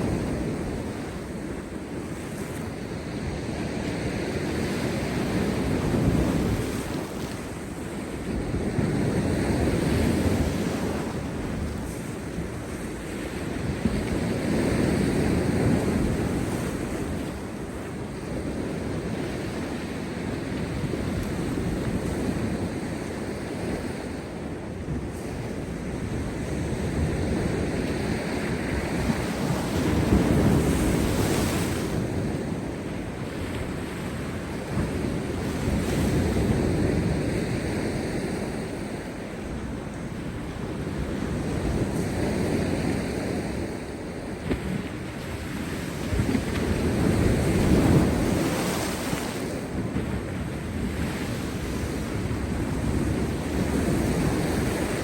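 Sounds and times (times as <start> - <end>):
wind on microphone: 0.0 - 55.0
waves crashing on rocks: 25.1 - 55.0.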